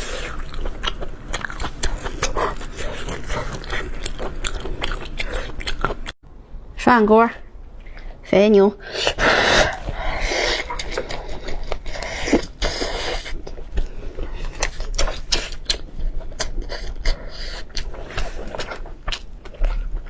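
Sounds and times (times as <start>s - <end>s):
slurping: 0.0s - 6.2s
wet chewing: 0.0s - 6.2s, 9.0s - 20.0s.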